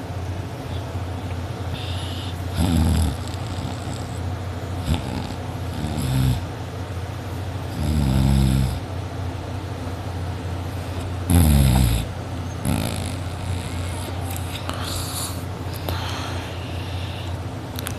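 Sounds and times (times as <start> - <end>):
steady low hum: 0.0 - 17.9
person snoring loudly: 1.8 - 4.1, 4.8 - 6.5, 7.7 - 8.8, 11.3 - 14.0.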